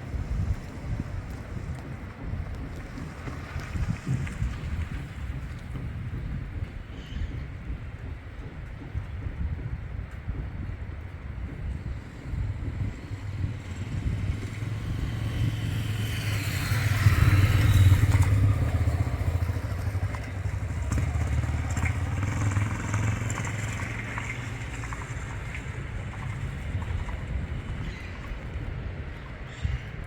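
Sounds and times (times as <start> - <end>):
motorcycle passing by: 12.6 - 27.9.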